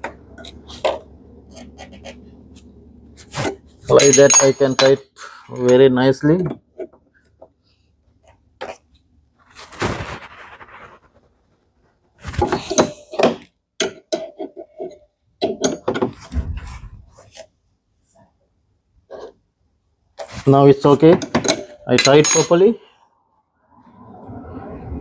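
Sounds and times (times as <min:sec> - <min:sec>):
metal tools clinking and scraping: 0:03.2 - 0:05.8, 0:12.5 - 0:16.1, 0:20.2 - 0:22.8.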